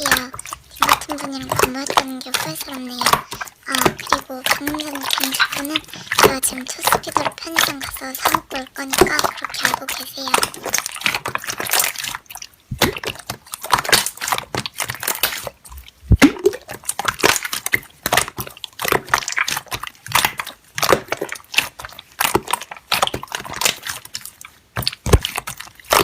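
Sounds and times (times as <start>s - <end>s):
slime squelching by hand: 0.0s - 26.0s.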